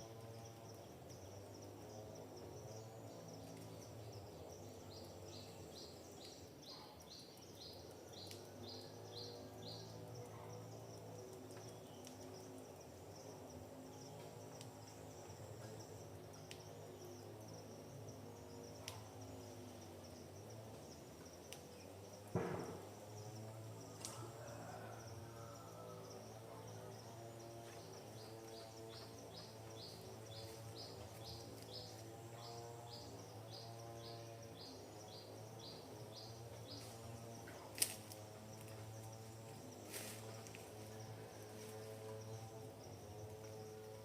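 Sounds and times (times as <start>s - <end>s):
insects trilling: 0.0s - 44.0s
sharp knock: 22.4s - 22.9s.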